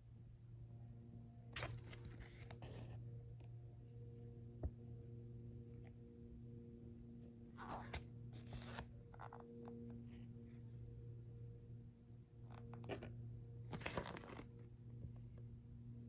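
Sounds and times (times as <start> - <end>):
paper rustling: 1.6 - 2.9, 13.7 - 14.4.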